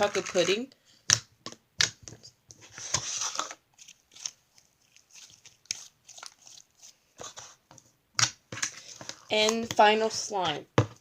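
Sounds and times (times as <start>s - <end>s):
slime squelching: 2.9s - 10.0s.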